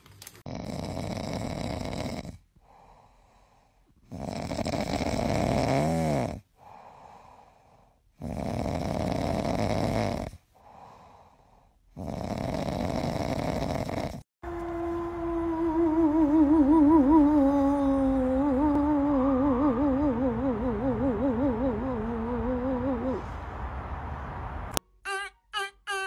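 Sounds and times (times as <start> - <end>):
dog snoring: 0.5 - 2.5, 4.0 - 6.4, 8.2 - 10.4, 11.9 - 14.2.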